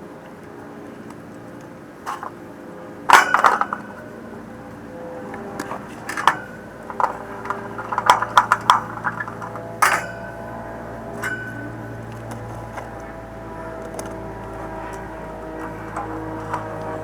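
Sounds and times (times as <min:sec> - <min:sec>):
steady hum: 0:00.0 - 0:17.0
tools clicking and clinking: 0:03.1 - 0:04.0, 0:05.6 - 0:13.1.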